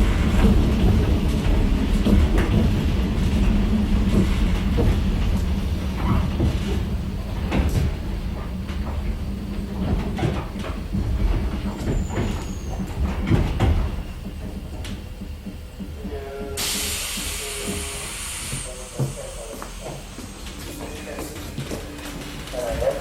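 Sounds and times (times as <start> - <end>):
train car rumbling: 0.0 - 23.0
compressed air hiss: 16.6 - 20.6.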